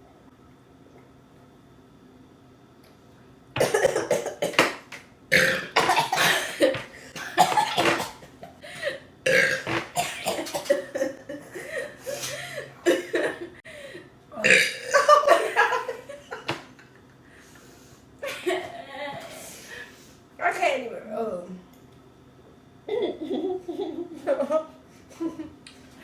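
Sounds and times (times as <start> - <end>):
long loud belches: 5.3 - 6.2, 9.2 - 10.1, 14.4 - 15.0.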